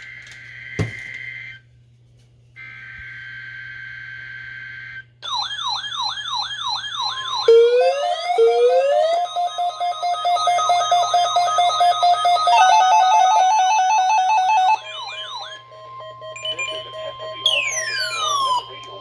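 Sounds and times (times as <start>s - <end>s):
falling warble alarm: 2.6s - 19.0s
steady beeping: 7.0s - 19.0s
digital header burst: 7.1s - 19.0s
rising chirps: 14.4s - 18.8s.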